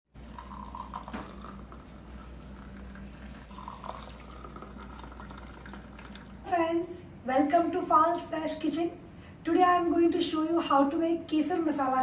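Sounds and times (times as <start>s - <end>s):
tea boiling and bubbling: 0.2s - 6.6s
low steady hum: 0.2s - 12.0s.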